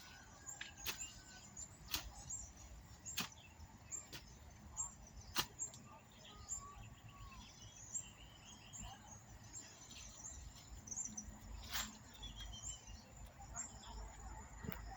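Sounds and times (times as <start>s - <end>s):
birds chirping: 0.0s - 14.9s
insects calling: 0.0s - 14.9s.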